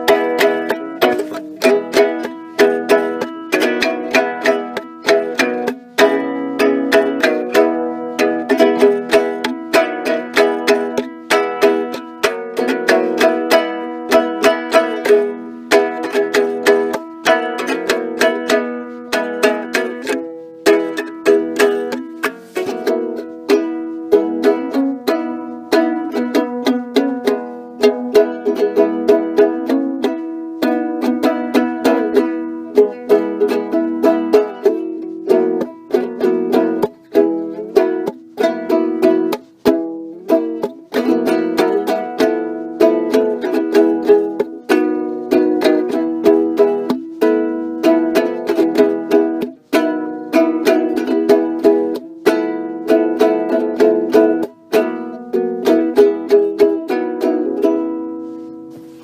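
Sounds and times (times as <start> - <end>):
ukulele plucked and strummed: 0.0 - 59.0.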